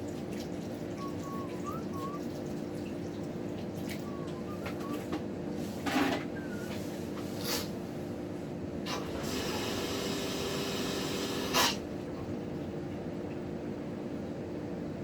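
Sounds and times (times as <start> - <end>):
water gushing into a bucket: 0.0 - 4.0, 8.9 - 11.9.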